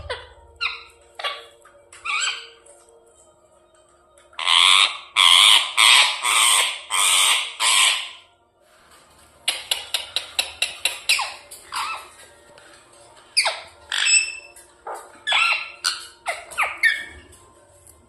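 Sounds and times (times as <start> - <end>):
parrot chirping: 0.0 - 2.7, 4.4 - 8.3, 9.5 - 12.2, 13.3 - 17.3
parrot squawking: 0.0 - 2.7, 4.3 - 8.3, 9.5 - 12.2, 13.3 - 17.3.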